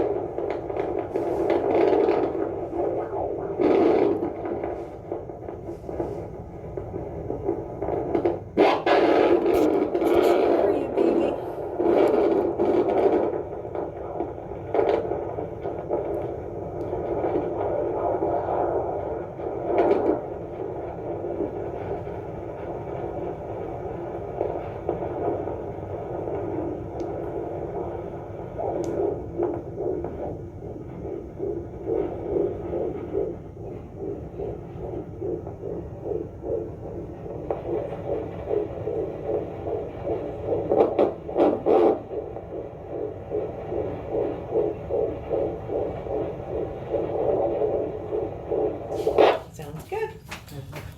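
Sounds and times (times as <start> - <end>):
steady doppler hum: 0.0 - 12.0
fetal heartbeat pulsing: 0.0 - 50.9.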